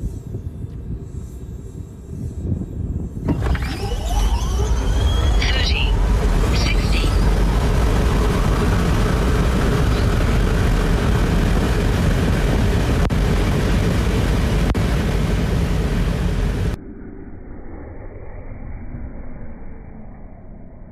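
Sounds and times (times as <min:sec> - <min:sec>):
muffled vehicle sound: 0:00.0 - 0:20.9
rushing vehicle noise: 0:03.1 - 0:16.8.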